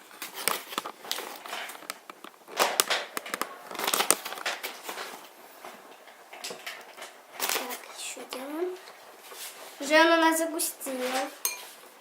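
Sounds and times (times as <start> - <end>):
slime crinkling and rustling: 0.0 - 11.4.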